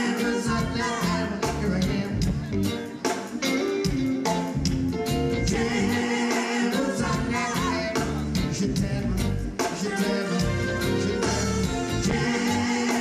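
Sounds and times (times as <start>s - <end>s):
heavy bass line: 0.0s - 2.8s, 3.5s - 13.0s
reggae band playing: 0.0s - 13.0s
person singing: 5.4s - 13.0s.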